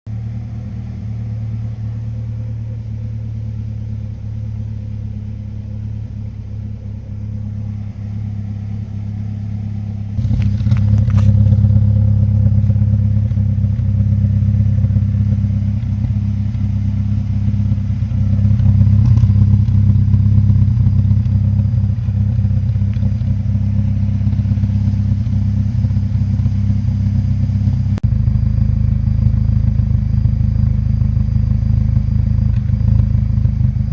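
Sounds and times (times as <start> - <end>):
car engine idling roughly: 0.1 - 33.9
brief engine clatter: 10.2 - 14.0, 30.5 - 33.9.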